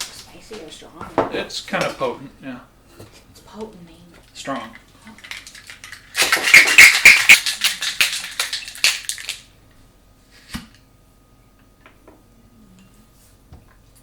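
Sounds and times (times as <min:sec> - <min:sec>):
ice rattling in cocktail shaker: 0:05.1 - 0:09.5.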